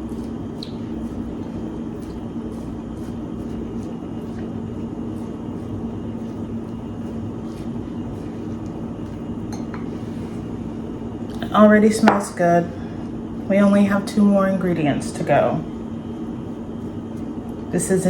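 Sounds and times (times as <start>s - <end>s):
spoon mixing in a bowl: 0.0s - 10.3s.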